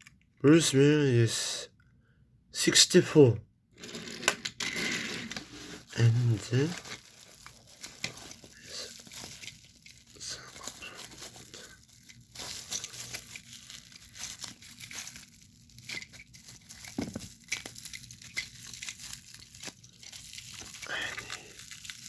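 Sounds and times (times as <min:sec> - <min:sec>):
packaging being torn and crinkled: 0:05.3 - 0:22.0.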